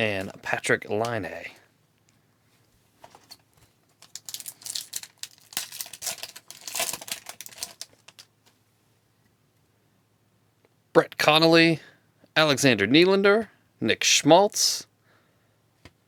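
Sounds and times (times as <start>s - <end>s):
foil wrapper crinkling and tearing: 4.0s - 8.3s.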